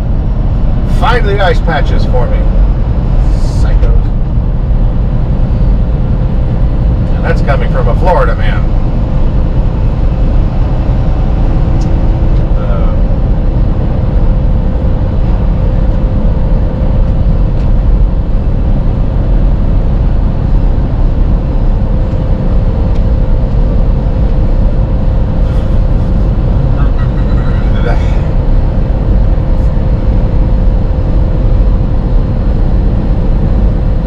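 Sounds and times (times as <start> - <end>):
truck diesel engine drone: 0.0 - 34.0
thin steady hum: 22.9 - 33.8.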